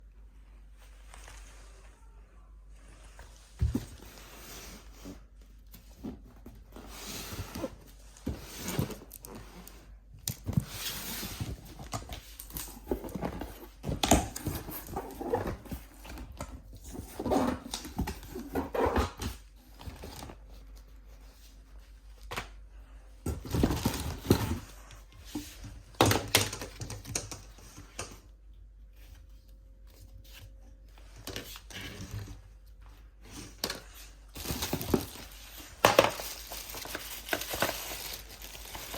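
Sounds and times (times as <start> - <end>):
packaging rustling: 33.6 - 38.9.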